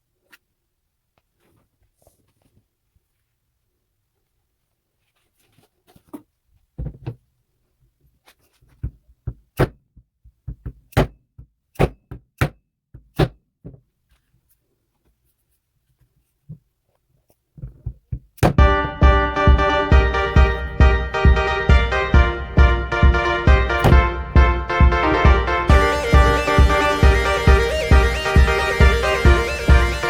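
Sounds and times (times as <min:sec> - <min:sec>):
sharp knocks and taps: 0:10.3 - 0:13.8.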